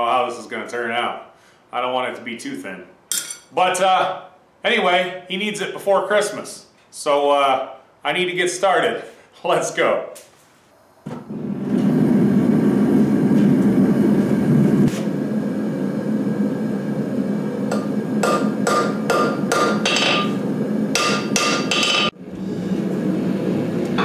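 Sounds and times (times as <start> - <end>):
steady low rumble: 11.5 - 18.7
hammer ringing on anvil: 17.7 - 20.4, 21.0 - 22.1.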